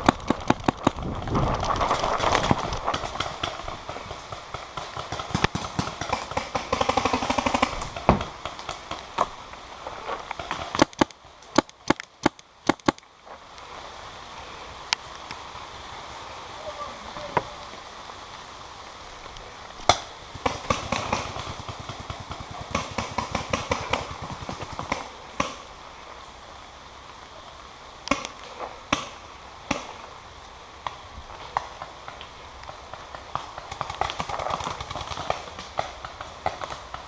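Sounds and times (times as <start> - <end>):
rain hiss: 0.0 - 37.0
paintball markers firing: 10.5 - 13.0.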